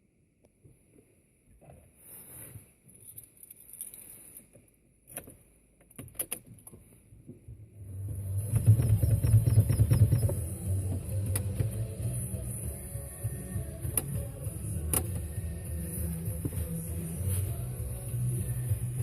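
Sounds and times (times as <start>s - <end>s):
keys jingling: 2.9s - 4.5s
car engine starting and idling: 7.3s - 19.0s.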